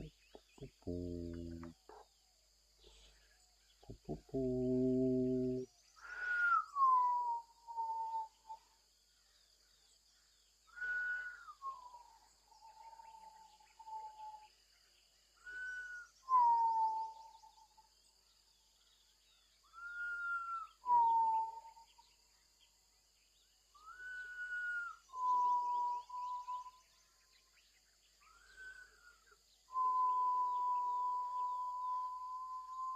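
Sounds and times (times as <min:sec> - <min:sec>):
two-note whistle: 0:29.7 - 0:32.9.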